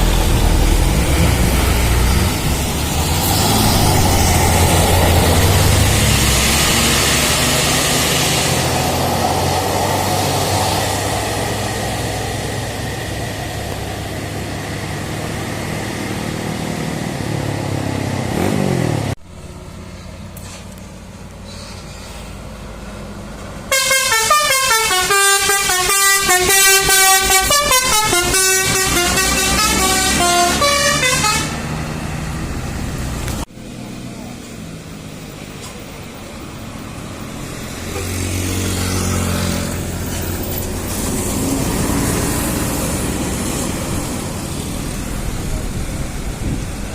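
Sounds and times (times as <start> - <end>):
heavy bus engine running: 0.0 - 46.9
multi-tone musical bus horn: 23.7 - 31.8.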